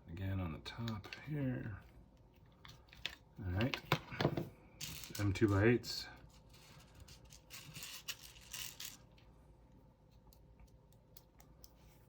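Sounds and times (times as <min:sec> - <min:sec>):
plastic parts and screws rustling: 0:04.8 - 0:09.3.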